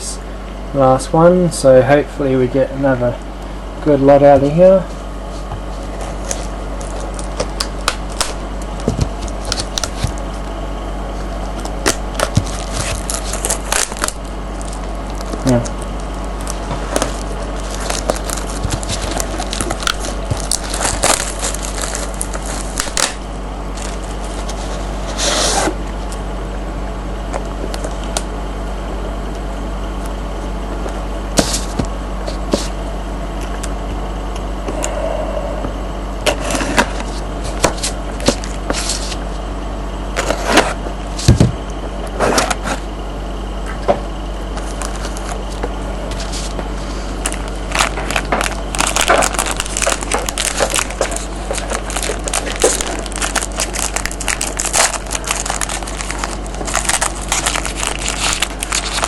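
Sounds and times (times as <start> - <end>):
low electrical hum: 0.0 - 59.0
packaging crinkling and rustling: 5.2 - 10.4, 11.6 - 26.2, 44.5 - 59.0.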